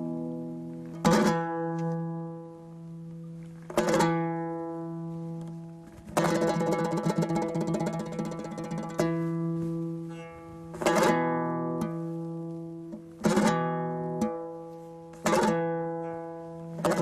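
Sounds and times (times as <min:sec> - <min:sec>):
fast lute strumming: 0:00.0 - 0:03.1, 0:03.7 - 0:17.0
lute strummed chords: 0:00.0 - 0:17.0.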